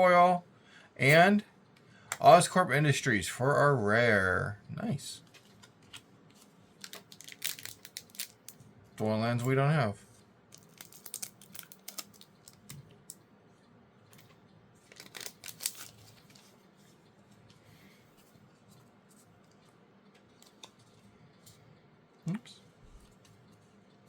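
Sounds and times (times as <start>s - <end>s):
foil wrapper rustling: 6.8s - 8.6s, 10.5s - 12.8s, 14.8s - 16.6s
trading cards clicking and rustling: 10.6s - 12.9s, 14.2s - 16.5s.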